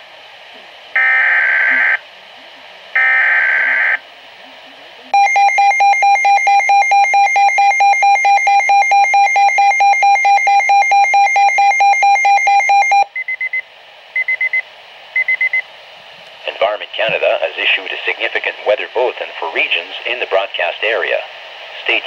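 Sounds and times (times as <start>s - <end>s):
beeping data tones: 5.2s - 13.6s, 14.2s - 14.6s, 15.2s - 15.6s.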